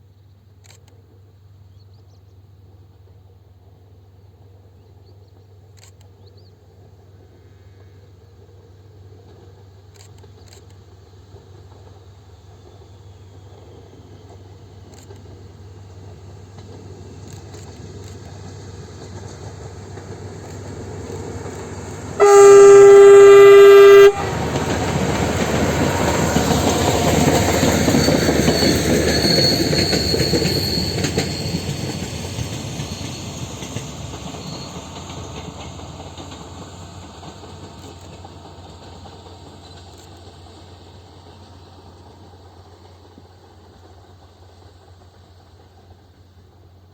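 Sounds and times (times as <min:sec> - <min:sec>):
rail vehicle rumble: 0:00.0 - 0:46.9
wheels on rails: 0:05.8 - 0:46.9
long steady horn blast: 0:22.2 - 0:25.1.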